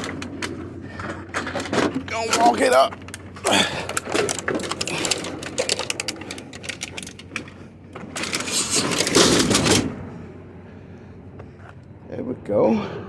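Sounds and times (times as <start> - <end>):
exercise machine rattling: 0.0 - 10.0
loud scraping: 8.1 - 10.0.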